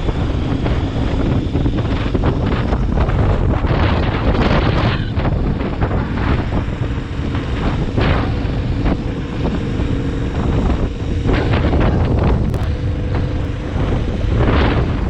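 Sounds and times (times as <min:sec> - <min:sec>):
wind buffeting microphone: 0:00.0 - 0:15.0
faint hum: 0:04.9 - 0:15.0.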